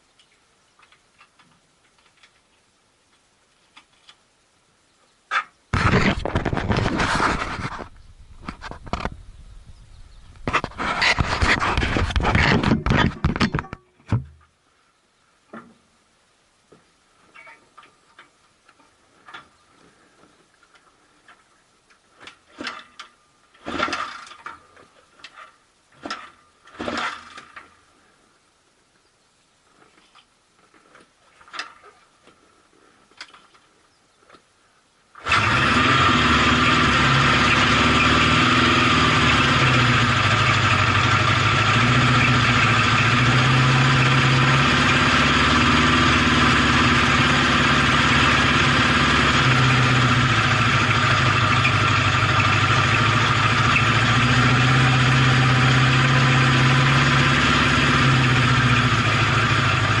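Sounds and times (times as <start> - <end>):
motorcycle engine running: 35.2 - 60.0.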